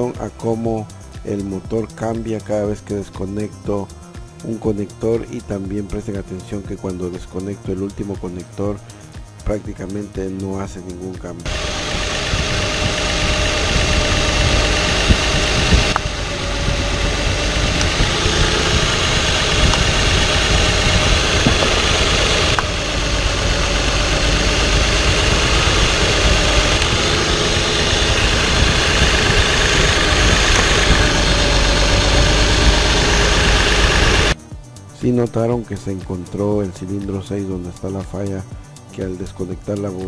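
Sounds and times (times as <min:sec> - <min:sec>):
truck engine idling: 0:11.5 - 0:34.4.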